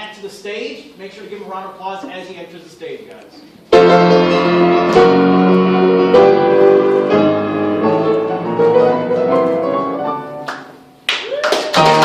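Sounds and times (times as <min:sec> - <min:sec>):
piano chords ringing: 0:03.7 - 0:11.0.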